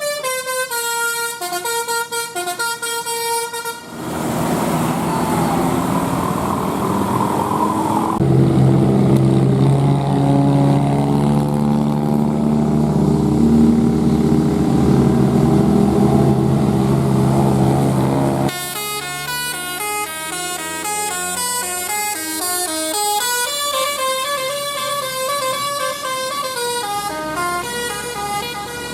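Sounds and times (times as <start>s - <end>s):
musical air horn tune: 0.0s - 3.9s, 18.5s - 28.9s
bus engine drone: 0.0s - 28.9s.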